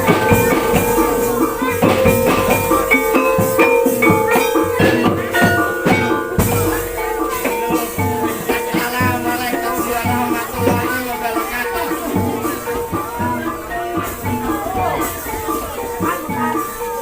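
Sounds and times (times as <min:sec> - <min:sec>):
hand-drum strokes: 0:00.0 - 0:17.0
struck metallophone notes: 0:00.0 - 0:17.0.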